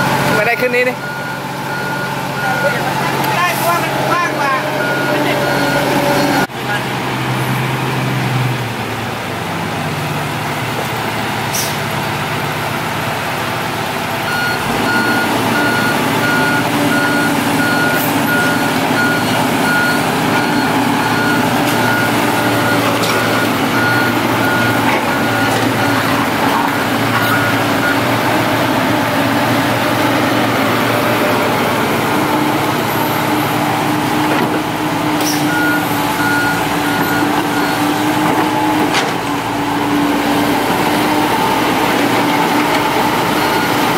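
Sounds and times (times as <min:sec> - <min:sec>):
diesel engine running: 0:00.0 - 0:43.9
back-up alarm beeping: 0:00.3 - 0:06.5, 0:14.3 - 0:28.2.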